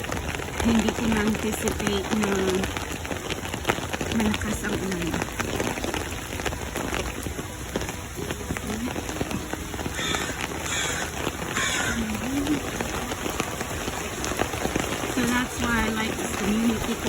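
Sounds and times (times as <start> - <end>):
hissing splashes: 0.0 - 17.0
rain pattering on an umbrella: 0.0 - 17.0.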